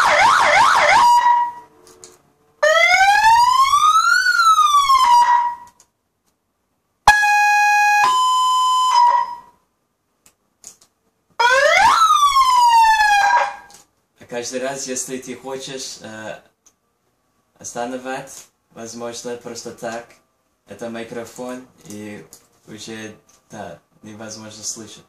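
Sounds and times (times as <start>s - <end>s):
electronic siren tones: 0.0s - 1.8s, 2.6s - 5.7s, 7.1s - 9.6s.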